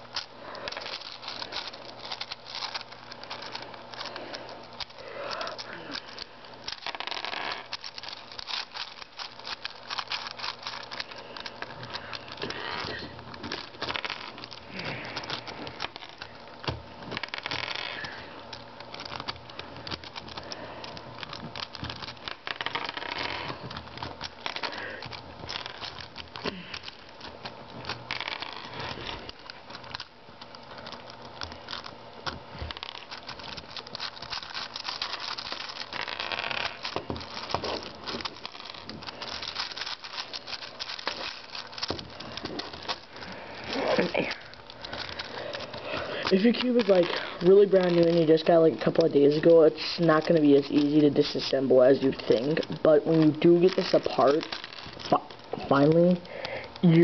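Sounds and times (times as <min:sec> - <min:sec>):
plastic puzzle cube clicking: 0:04.8 - 0:14.6.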